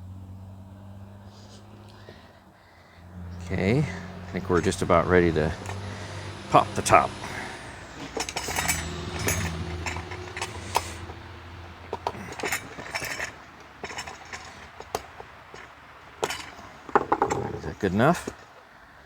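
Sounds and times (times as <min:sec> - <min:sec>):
low hum: 0:00.0 - 0:14.7
metallic clicks and clinks of tools: 0:03.4 - 0:18.4.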